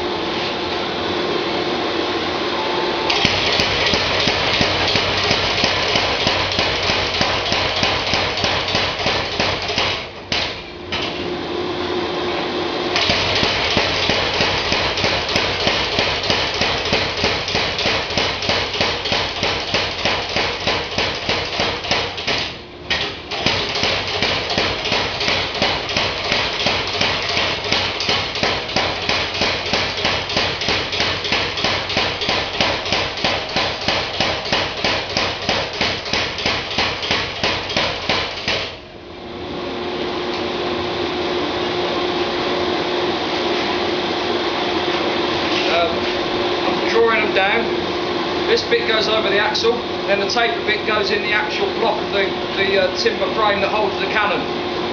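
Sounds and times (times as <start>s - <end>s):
machine running: 0.0s - 54.9s
power hammer striking hot steel: 3.1s - 11.2s, 13.0s - 38.8s.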